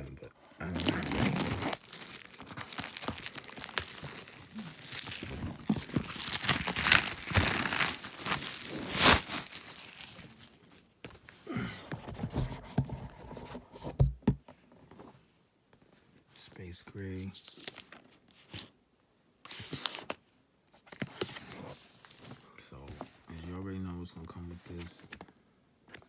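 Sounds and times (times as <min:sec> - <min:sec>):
plastic wrap tearing and crinkling: 0:00.6 - 0:10.7.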